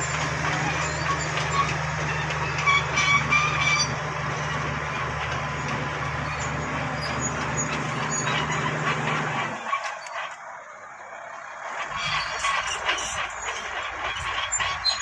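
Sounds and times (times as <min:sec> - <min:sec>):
bulldozer diesel engine: 0:00.0 - 0:15.0
tracks rattling: 0:00.0 - 0:15.0
short high squeaks: 0:00.4 - 0:04.0, 0:06.1 - 0:10.4, 0:11.8 - 0:15.0.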